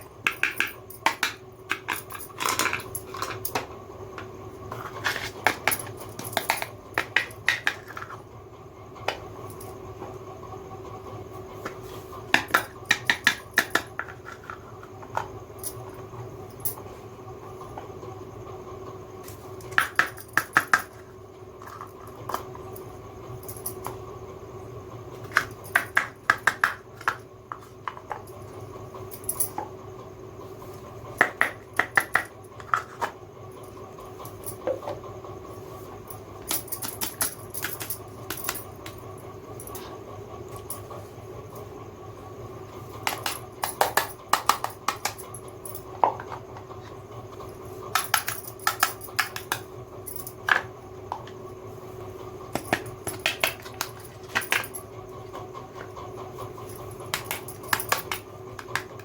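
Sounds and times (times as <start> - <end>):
faint steady hum: 0.0 - 59.0
plastic toy pieces clattering: 0.3 - 3.6.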